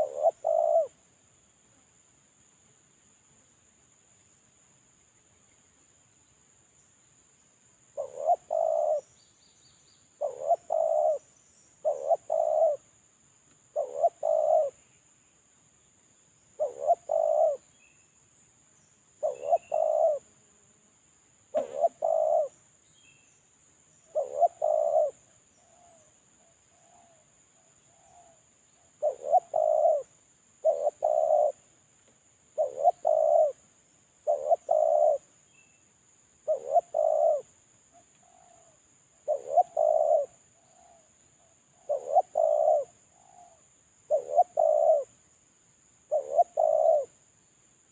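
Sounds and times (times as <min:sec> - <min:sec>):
dove cooing: 0:00.0 - 0:01.0, 0:08.0 - 0:09.1, 0:10.2 - 0:12.8, 0:13.7 - 0:14.8, 0:16.6 - 0:17.6, 0:19.2 - 0:20.2, 0:21.5 - 0:22.6, 0:24.1 - 0:26.1, 0:27.9 - 0:31.6, 0:32.6 - 0:33.6, 0:34.2 - 0:35.3, 0:36.4 - 0:37.5, 0:38.2 - 0:45.1, 0:46.1 - 0:47.1.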